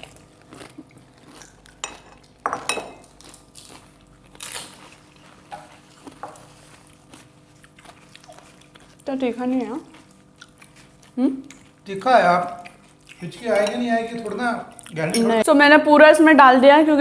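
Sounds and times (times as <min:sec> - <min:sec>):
plates and spoons clinking: 0:01.8 - 0:03.1, 0:13.3 - 0:14.3, 0:15.0 - 0:15.4.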